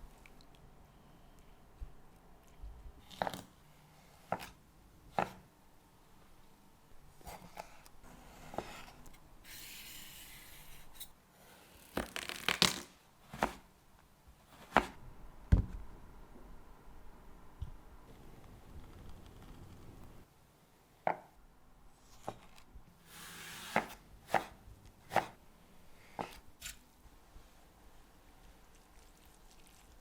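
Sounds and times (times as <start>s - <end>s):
knife cutting on a cutting board: 7.3s - 11.1s, 23.1s - 25.4s.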